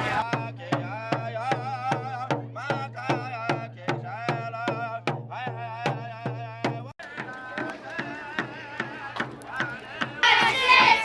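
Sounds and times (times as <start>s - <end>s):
drum beating steadily: 0.0s - 11.0s
people singing: 0.0s - 11.0s.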